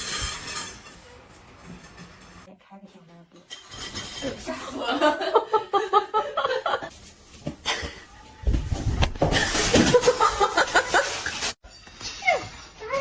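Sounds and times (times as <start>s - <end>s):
people laughing: 4.7s - 6.9s.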